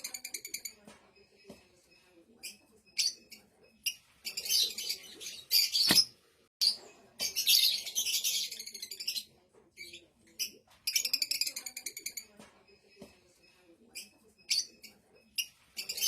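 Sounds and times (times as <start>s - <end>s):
lovebird chirping and chattering: 2.4s - 12.3s, 13.9s - 16.0s.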